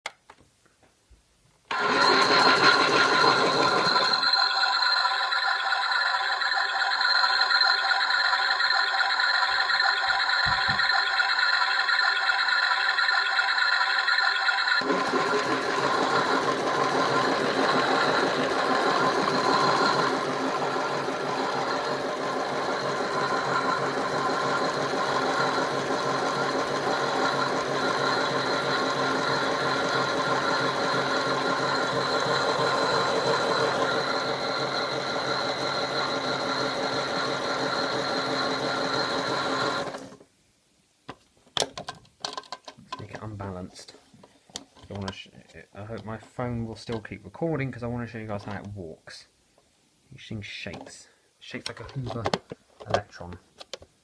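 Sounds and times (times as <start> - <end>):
toy motor whirring with whine: 1.7 - 40.1.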